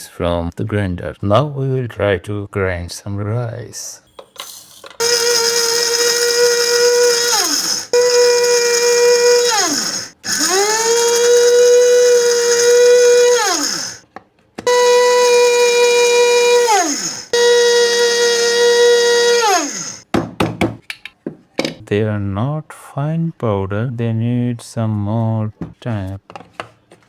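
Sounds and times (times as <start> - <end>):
grinder motor whining: 5.0 - 14.0, 14.6 - 20.0.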